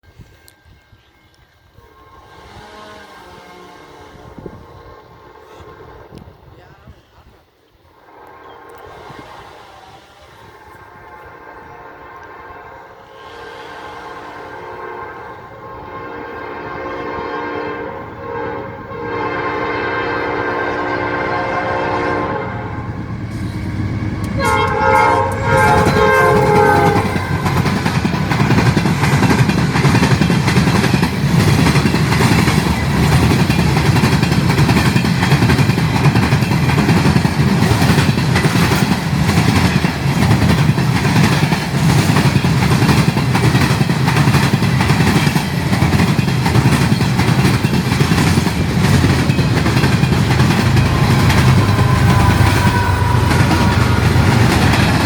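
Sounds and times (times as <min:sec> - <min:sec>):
train passing rumble: 0:00.0 - 0:55.0
train air horn blast: 0:01.8 - 0:07.3, 0:07.9 - 0:28.5, 0:50.3 - 0:55.0
wheels clicking over rail joints: 0:23.3 - 0:55.0.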